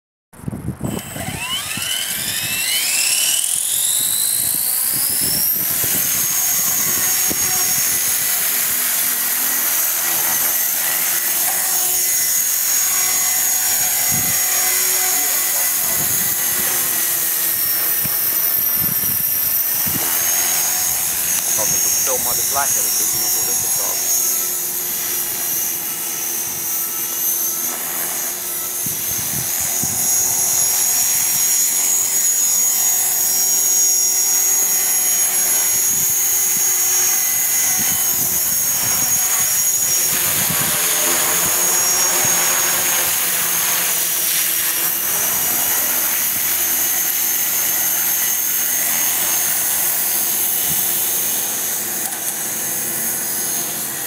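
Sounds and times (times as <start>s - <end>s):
wind buffeting microphone: 0.4s - 1.3s, 4.3s - 8.2s, 14.0s - 14.5s, 15.8s - 16.8s, 17.6s - 22.0s, 28.8s - 30.3s, 37.7s - 41.6s
rc helicopter motor whine: 0.4s - 54.0s.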